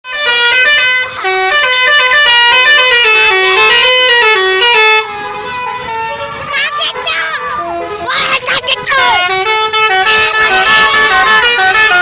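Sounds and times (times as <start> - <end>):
bus horn playing fast tune: 0.1 - 12.0
held horn tone: 0.1 - 12.0.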